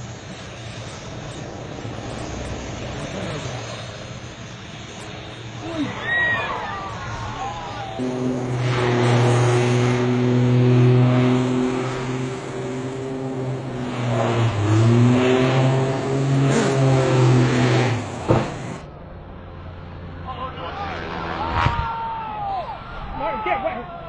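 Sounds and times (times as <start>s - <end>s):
engine running hard: 0.0s - 21.9s
rushing noise: 0.0s - 23.4s.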